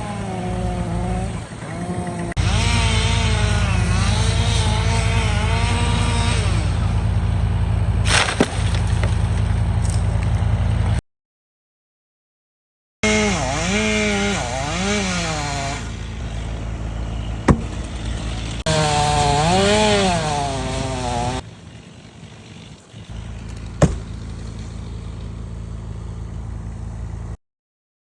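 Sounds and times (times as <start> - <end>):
chainsaw cutting wood: 0.0 - 11.0, 13.0 - 27.4
sharp knocks: 17.5 - 18.1, 23.6 - 24.3.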